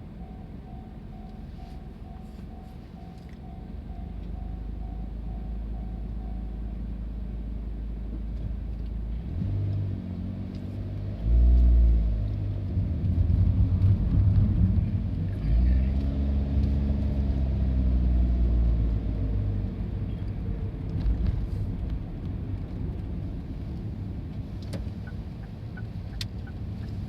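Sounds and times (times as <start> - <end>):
diesel railcar engine rumble: 0.0 - 27.0.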